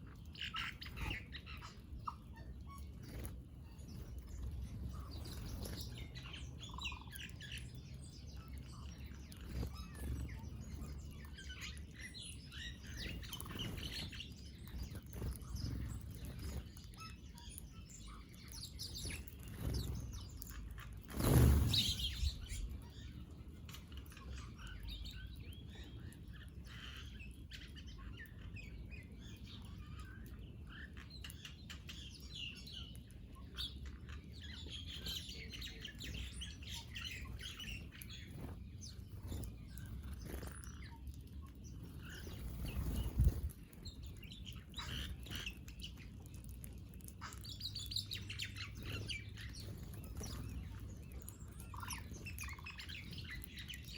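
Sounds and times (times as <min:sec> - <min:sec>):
small birds chirping and twittering: 0:00.0 - 0:53.9.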